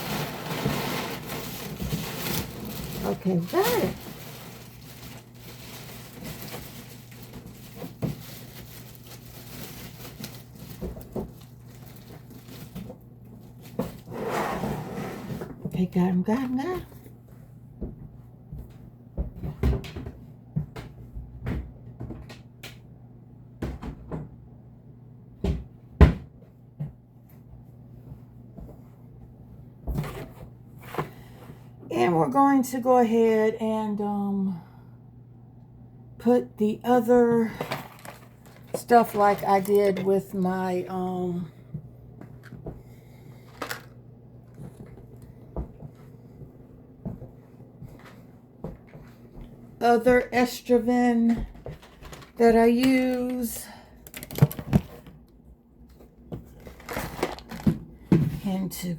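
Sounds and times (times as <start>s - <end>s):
faint steady hum: 0.0s - 58.9s
objects knocking and clattering: 43.5s - 44.8s.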